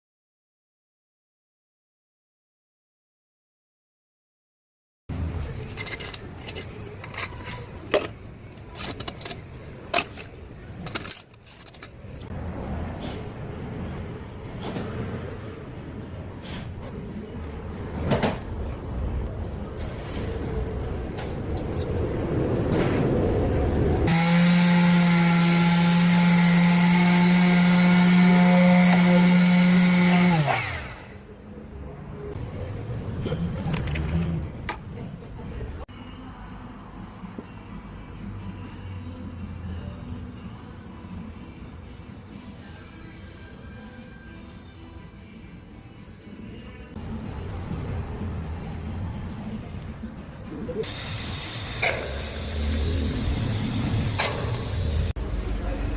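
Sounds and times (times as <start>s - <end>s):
metal tools clinking and tapping: 5.6s - 12.2s
power tool motor whining: 24.1s - 31.1s.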